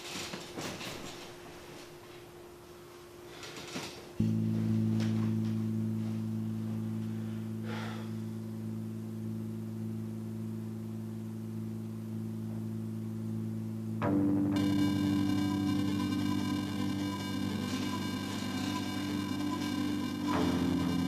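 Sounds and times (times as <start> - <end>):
low drone chord music: 4.2 - 21.0.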